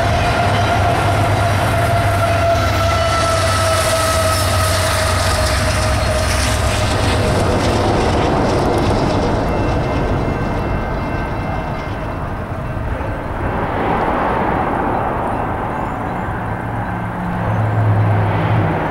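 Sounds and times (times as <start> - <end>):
freight train rumble and clatter: 0.0 - 18.9.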